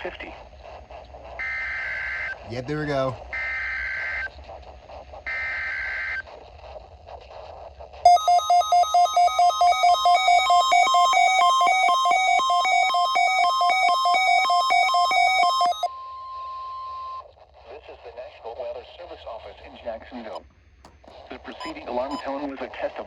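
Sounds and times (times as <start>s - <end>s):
rapid buzzy electronic alert beeps: 8.1s - 15.9s
warbling two-tone digital data: 8.1s - 15.9s.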